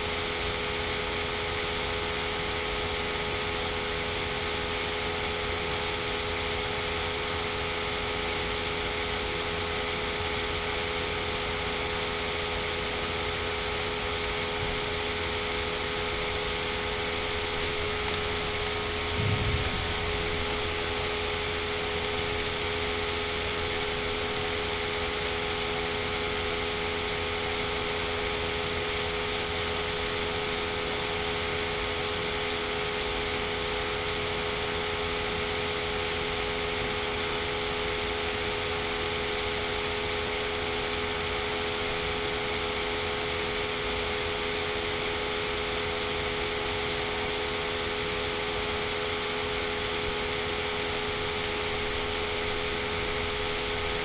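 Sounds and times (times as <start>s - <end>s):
steady background hum and hiss: 0.0s - 54.0s.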